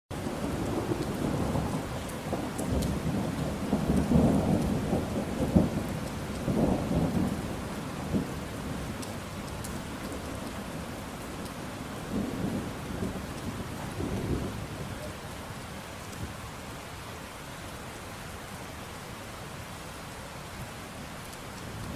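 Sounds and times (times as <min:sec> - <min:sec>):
steady rain: 0:00.1 - 0:21.9
rolling thunder: 0:00.2 - 0:15.1
raindrop ticks: 0:00.2 - 0:16.4, 0:21.2 - 0:21.9.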